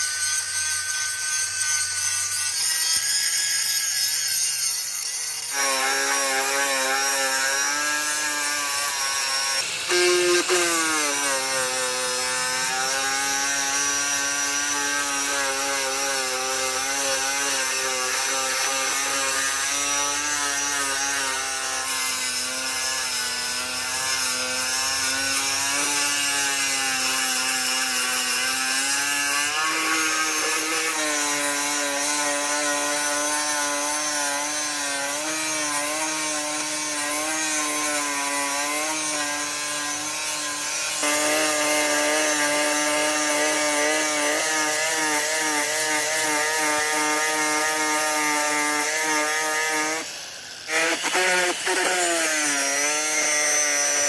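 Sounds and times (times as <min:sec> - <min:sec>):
power tool whining on metal: 0:00.0 - 0:54.0.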